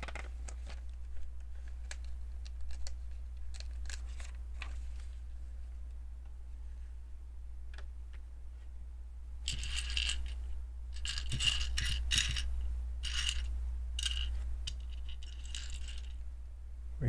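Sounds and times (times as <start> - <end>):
plastic toy bricks clattering: 0.0 - 0.8, 9.5 - 10.4, 11.0 - 16.2.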